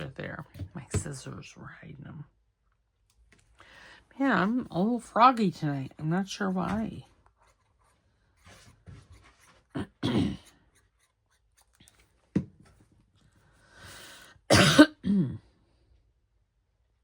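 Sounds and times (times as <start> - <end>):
woman clearing throat: 9.8 - 10.5, 14.5 - 15.5
woman coughing: 9.8 - 10.5, 14.5 - 15.4.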